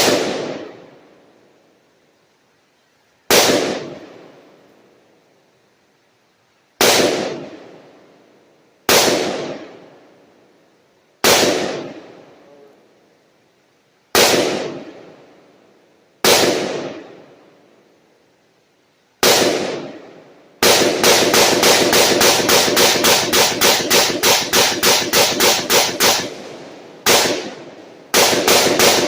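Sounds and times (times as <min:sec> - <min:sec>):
gunshots with long echo: 0:00.0 - 0:01.2, 0:03.3 - 0:04.6, 0:06.8 - 0:08.2, 0:08.9 - 0:10.2, 0:11.2 - 0:12.4, 0:14.1 - 0:15.6, 0:16.2 - 0:17.7, 0:19.2 - 0:29.0.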